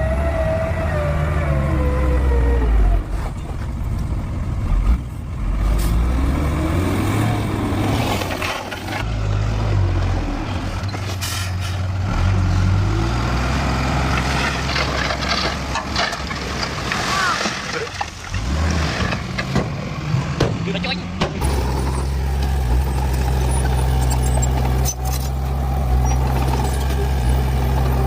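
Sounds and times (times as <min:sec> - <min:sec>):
heavy diesel machinery rumble: 0:00.1 - 0:28.0.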